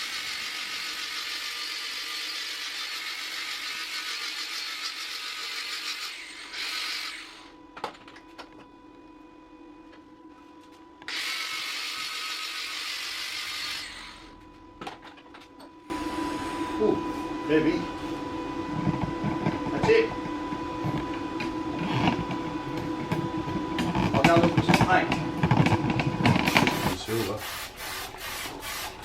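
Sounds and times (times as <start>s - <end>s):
angle grinder on metal: 0.0s - 7.5s, 11.1s - 14.3s.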